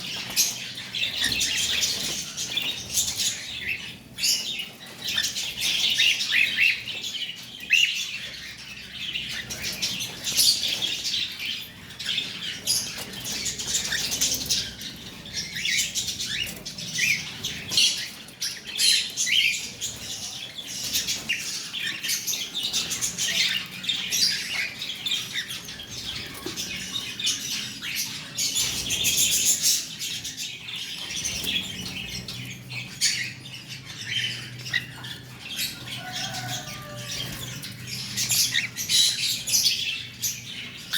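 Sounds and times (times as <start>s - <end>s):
cockatiel chirping and squawking: 34.2s - 39.7s.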